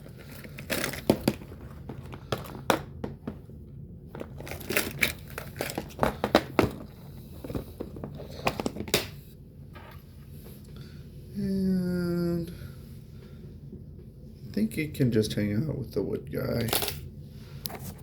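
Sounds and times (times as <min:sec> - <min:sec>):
plastic bag crinkling: 0:00.0 - 0:02.8, 0:04.1 - 0:08.8.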